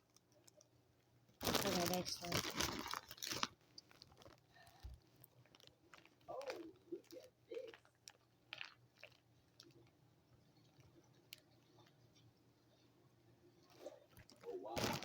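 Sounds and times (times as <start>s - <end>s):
plastic packaging crinkling: 1.4s - 9.8s, 13.8s - 15.0s.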